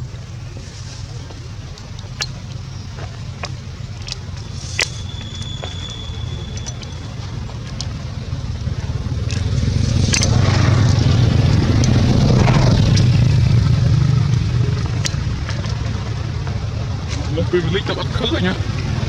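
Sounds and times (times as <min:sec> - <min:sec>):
vehicle engine rumbling: 0:00.0 - 0:19.0.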